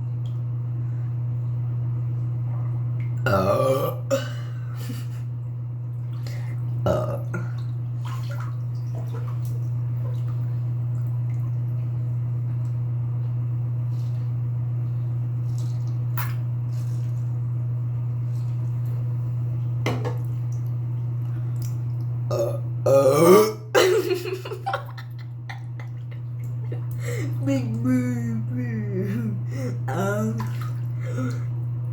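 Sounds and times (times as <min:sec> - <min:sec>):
steady low hum: 0:00.0 - 0:31.9
person burping loudly: 0:03.2 - 0:04.6, 0:06.8 - 0:07.6, 0:22.3 - 0:24.0.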